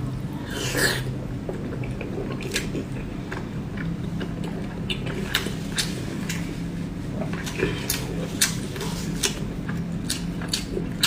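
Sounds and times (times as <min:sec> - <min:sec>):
chewing and biting: 0:07.2 - 0:11.0.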